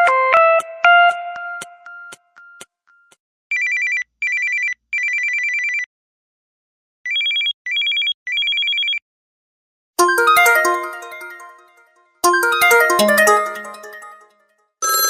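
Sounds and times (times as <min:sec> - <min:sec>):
warbling phone ringtone: 0:10.0 - 0:15.0.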